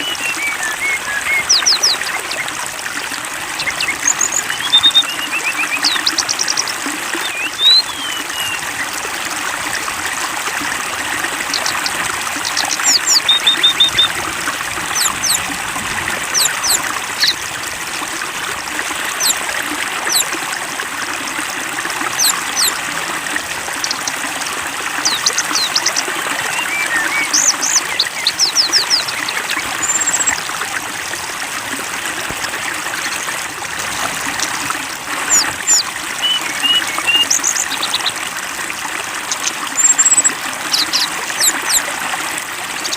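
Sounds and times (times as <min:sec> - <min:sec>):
trickling splashing water: 0:00.0 - 0:42.9
high bird chirps: 0:03.6 - 0:08.7, 0:11.5 - 0:14.1, 0:15.0 - 0:15.4, 0:25.0 - 0:30.3, 0:35.3 - 0:38.2, 0:39.3 - 0:41.8.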